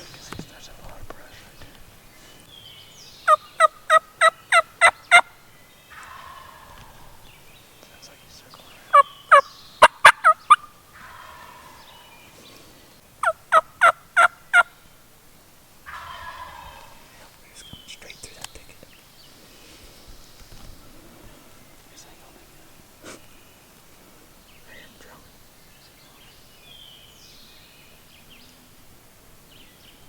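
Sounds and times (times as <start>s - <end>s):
soft low turkey calls: 3.2s - 15.1s, 15.8s - 27.2s
turkey yelping: 3.3s - 5.3s, 5.9s - 6.7s, 8.9s - 11.8s, 13.2s - 14.8s, 15.9s - 17.0s.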